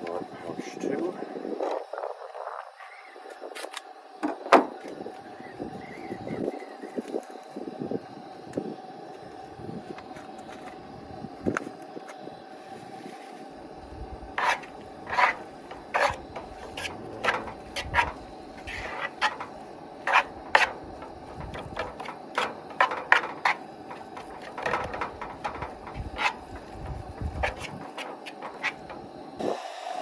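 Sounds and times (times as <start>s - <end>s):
faint steady hum: 0.0s - 29.6s
utensil scraping a cooking pan: 13.1s - 29.4s.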